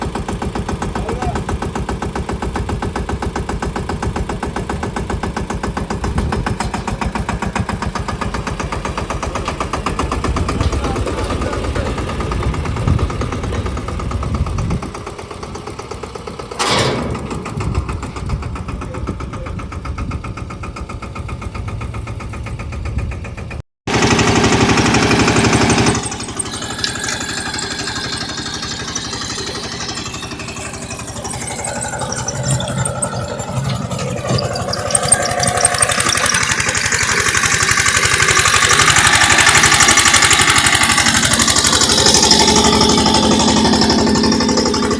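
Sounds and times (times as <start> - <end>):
tractor diesel engine running: 0.0 - 44.9.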